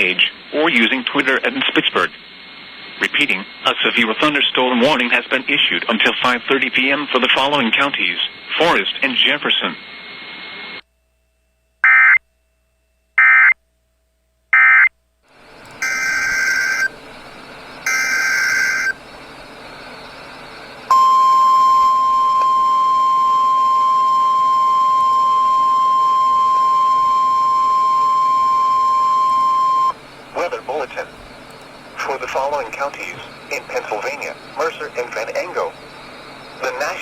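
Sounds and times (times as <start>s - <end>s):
radio hiss: 0.0s - 10.8s, 29.4s - 37.0s
steady warning alarm tone: 11.8s - 12.2s, 13.2s - 13.6s, 14.6s - 37.0s
buzzy warbling data bursts: 15.8s - 16.9s, 17.8s - 19.0s.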